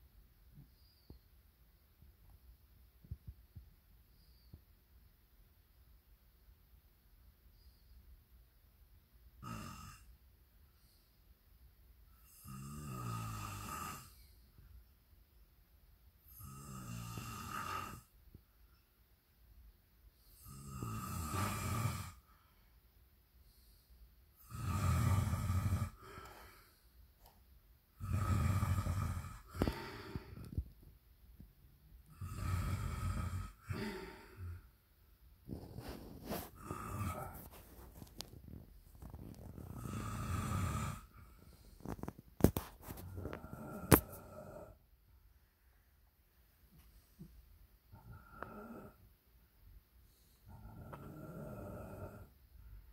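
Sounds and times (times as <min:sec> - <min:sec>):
person snoring loudly: 0:09.4 - 0:10.1, 0:12.2 - 0:14.2, 0:16.3 - 0:18.1, 0:20.3 - 0:22.3, 0:24.4 - 0:26.6, 0:27.9 - 0:30.7, 0:32.1 - 0:34.7, 0:35.5 - 0:44.8, 0:47.9 - 0:49.0, 0:50.4 - 0:52.4.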